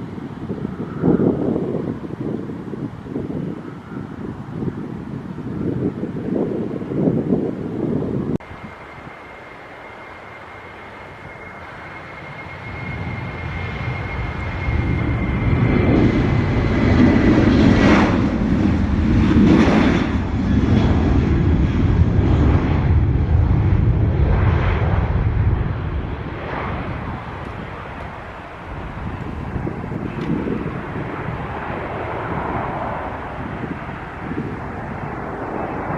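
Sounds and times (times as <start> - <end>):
airliner engine noise: 0.0 - 35.9
faint high whine: 8.4 - 15.9.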